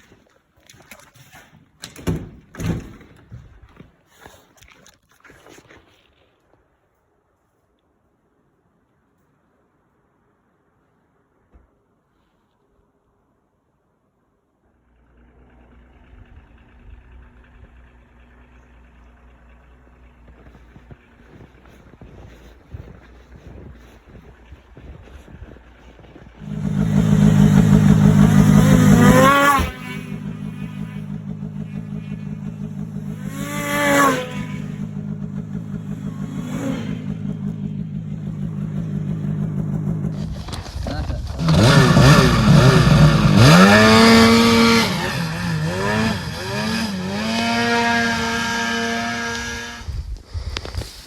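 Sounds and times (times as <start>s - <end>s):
vehicle engine humming: 13.2s - 51.0s
rustling: 39.3s - 41.6s.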